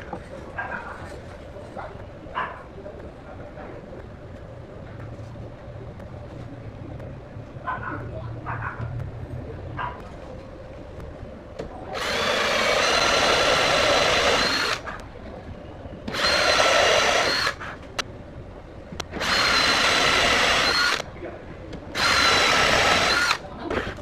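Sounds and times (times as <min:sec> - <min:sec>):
sharp clicks: 0:11.9 - 0:15.1, 0:16.1 - 0:18.1, 0:18.9 - 0:21.1, 0:21.7 - 0:23.5
angle grinder motor whine: 0:12.0 - 0:15.0, 0:16.1 - 0:17.6, 0:19.2 - 0:21.0, 0:22.0 - 0:23.5.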